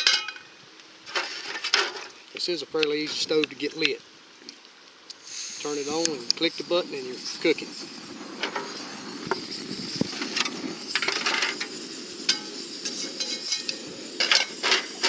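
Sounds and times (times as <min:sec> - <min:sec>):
camp stove burning: 0:00.0 - 0:15.0.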